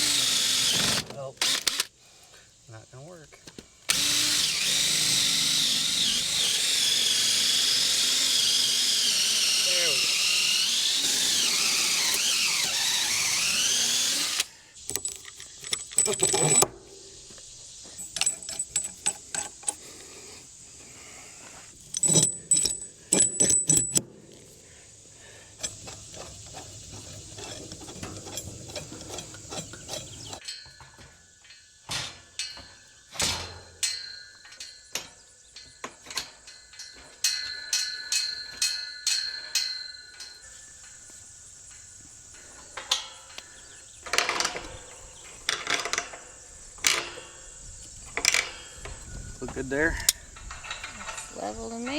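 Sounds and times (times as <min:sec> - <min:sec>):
cordless drill driving screw: 0:00.0 - 0:01.9, 0:03.9 - 0:15.1
insects chirping: 0:00.0 - 0:33.2, 0:33.8 - 0:51.9.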